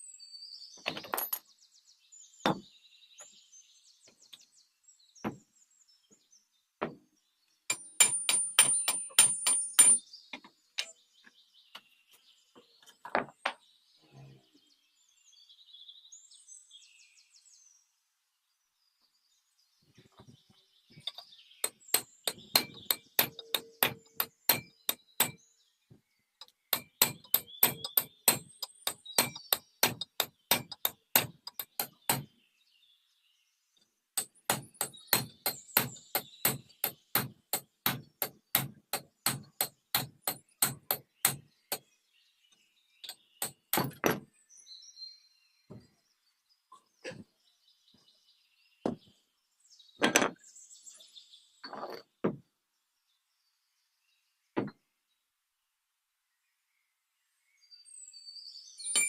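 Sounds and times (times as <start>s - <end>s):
faint bird chirps: 56.3s - 59.0s.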